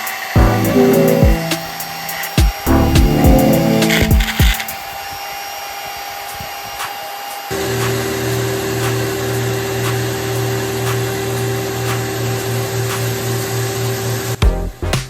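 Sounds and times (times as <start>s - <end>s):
music with steady beat: 0.4s - 5.0s, 14.4s - 15.0s.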